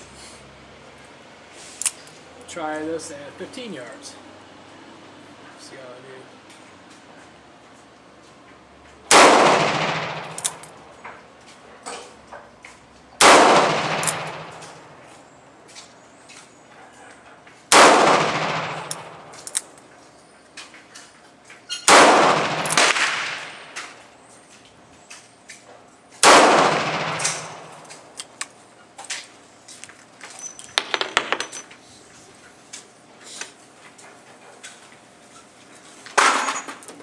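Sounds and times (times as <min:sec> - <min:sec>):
handgun shots ringing: 0:09.1 - 0:10.8, 0:13.2 - 0:14.9, 0:21.8 - 0:23.9, 0:26.2 - 0:28.1.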